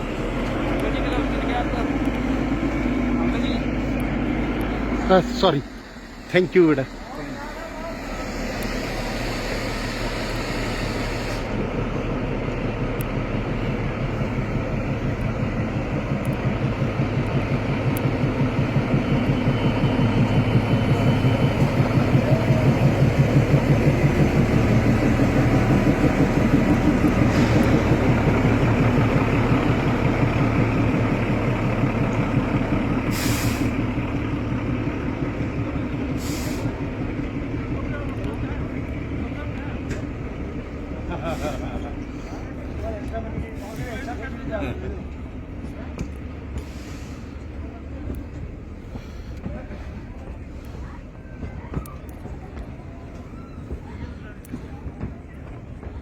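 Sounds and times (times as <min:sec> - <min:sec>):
locomotive engine throbbing: 0:00.0 - 0:56.0
short sharp hisses: 0:33.1 - 0:33.8, 0:36.2 - 0:36.8.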